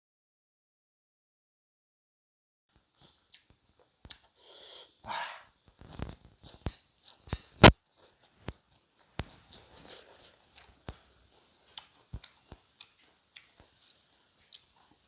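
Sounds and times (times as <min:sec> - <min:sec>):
wet chewing mouth clicks: 0:02.9 - 0:04.5, 0:05.7 - 0:15.0.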